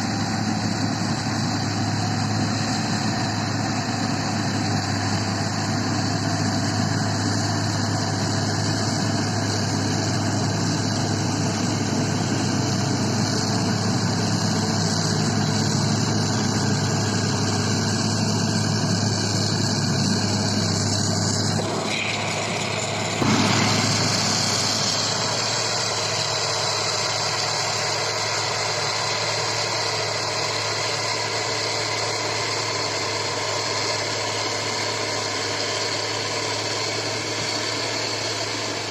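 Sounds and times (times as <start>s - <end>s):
combine harvester engine running: 0.0s - 38.9s.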